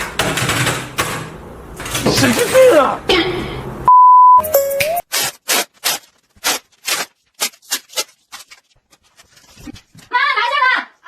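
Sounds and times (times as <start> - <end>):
loud steady beep: 3.9 - 5.0.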